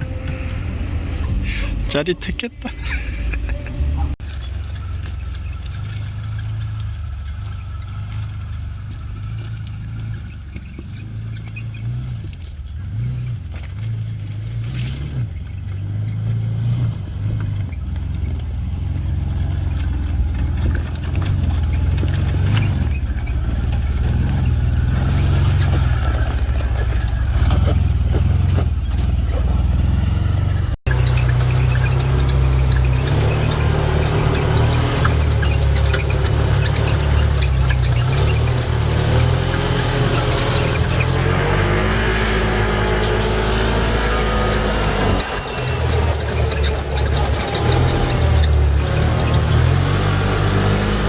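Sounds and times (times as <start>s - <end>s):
buggy engine revving: 0.0s - 51.0s.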